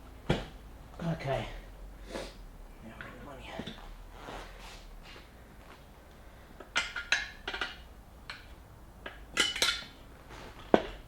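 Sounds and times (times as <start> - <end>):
metal tyre levers clinking on rim: 6.6 - 11.0.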